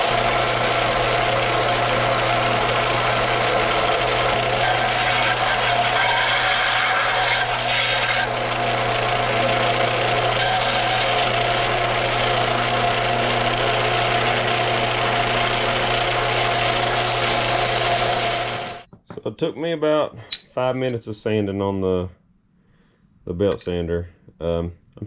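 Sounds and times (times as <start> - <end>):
belt sander grinding: 0.0 - 18.9.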